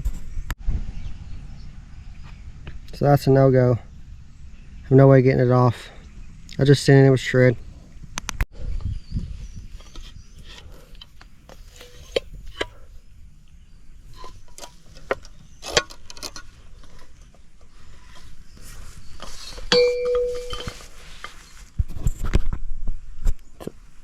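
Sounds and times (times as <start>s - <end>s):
ringing metal clank: 19.7s - 20.9s.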